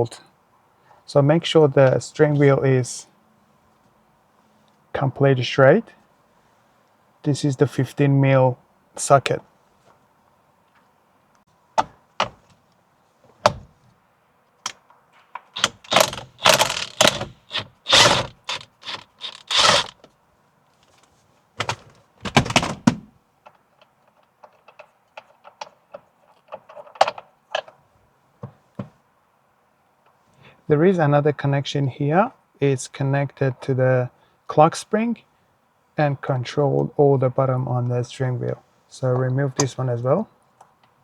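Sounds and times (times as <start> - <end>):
socket wrench clicking: 15.6 - 19.9.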